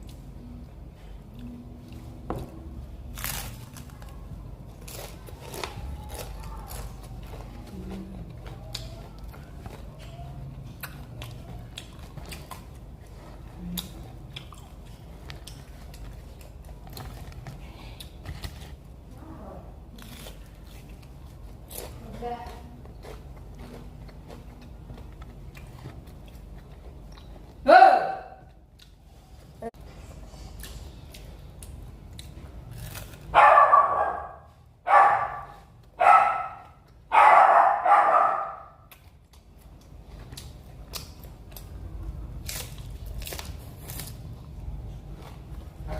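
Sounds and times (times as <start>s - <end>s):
chewing crispy fried fritters: 3.0s - 27.7s, 30.4s - 33.4s, 38.8s - 45.9s
dog barking: 27.7s - 28.4s, 33.4s - 38.8s.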